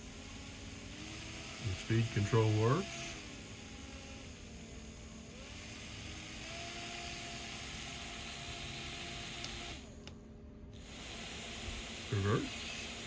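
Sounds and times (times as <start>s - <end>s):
small fan motor whining: 0.0s - 13.0s.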